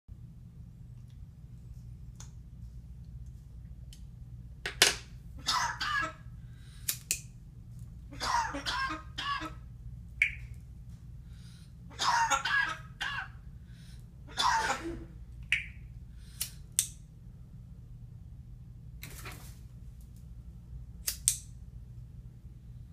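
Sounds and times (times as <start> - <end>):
parrot mimicking cough: 5.4 - 6.2, 8.1 - 9.6, 11.9 - 13.4, 14.3 - 15.1
parrot clicks and peeps: 10.2 - 10.5, 15.4 - 15.8.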